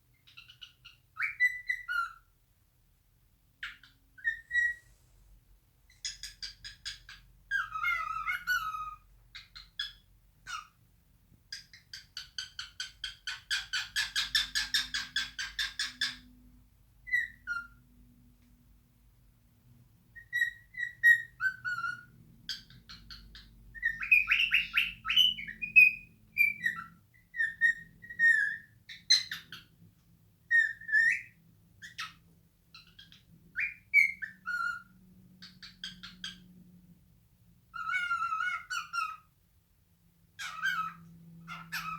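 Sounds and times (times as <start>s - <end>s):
cockatiel whistling: 3.6s - 4.8s, 20.2s - 29.6s, 30.5s - 32.2s, 32.8s - 34.9s.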